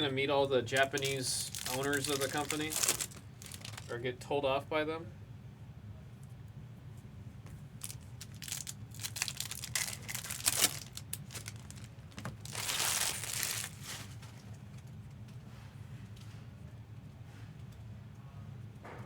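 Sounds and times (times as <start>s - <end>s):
plastic packaging crinkling: 0.7s - 3.9s, 7.8s - 14.4s
packaging tearing rip: 0.8s - 3.9s, 7.8s - 13.9s.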